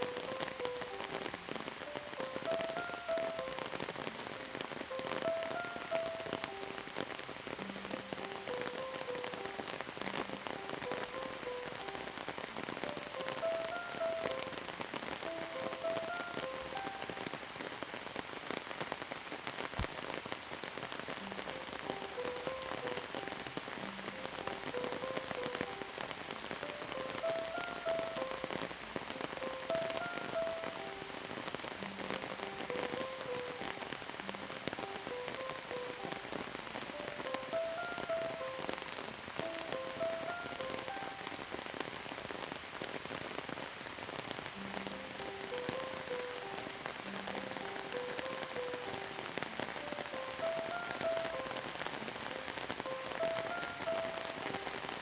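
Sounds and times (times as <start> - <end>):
gentle melody: 0.0 - 18.2, 20.8 - 42.4, 43.0 - 55.0
rain drops ticking: 0.0 - 55.0.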